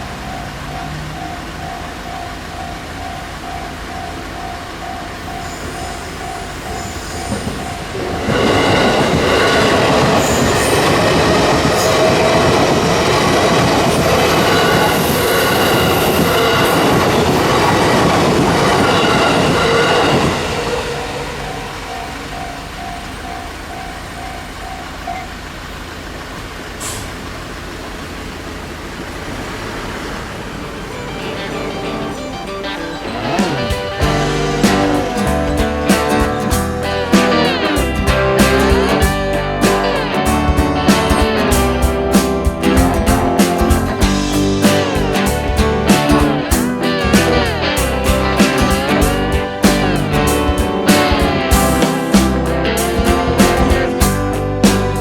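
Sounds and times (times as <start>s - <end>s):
level-crossing alarm ringing: 0.0s - 26.2s, 30.3s - 38.1s
high wheel squeal: 0.0s - 55.0s
train wheels rushing on rail: 0.0s - 55.0s.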